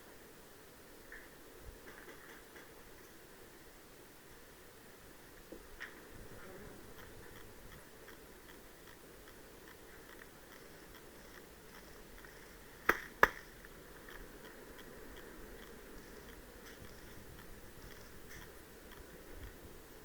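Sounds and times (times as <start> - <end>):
faint light ticking: 5.4 - 20.0.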